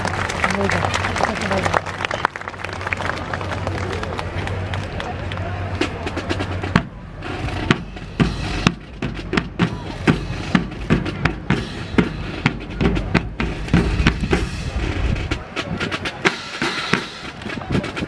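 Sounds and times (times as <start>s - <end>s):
snare drum strikes: 6.1s - 18.0s
bass drum beats: 6.2s - 18.0s.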